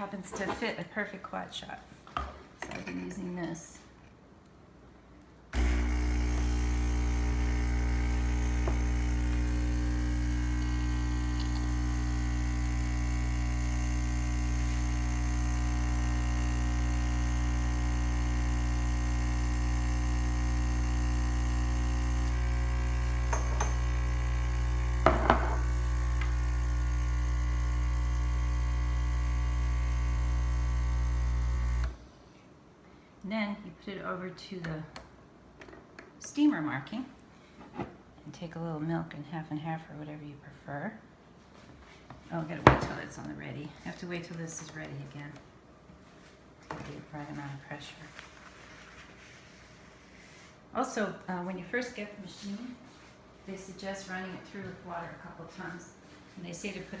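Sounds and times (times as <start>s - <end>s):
espresso machine pump buzzing: 5.6s - 32.0s.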